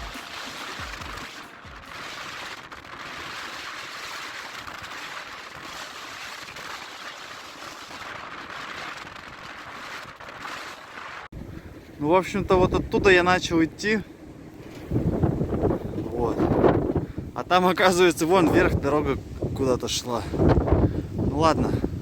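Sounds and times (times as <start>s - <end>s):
wind blowing over microphone: 11.3s - 22.0s.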